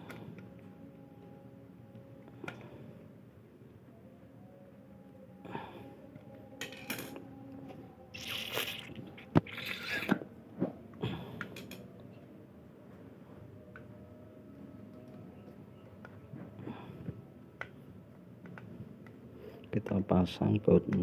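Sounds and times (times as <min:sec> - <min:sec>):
plastic parts clicking and scraping: 0:06.6 - 0:07.2.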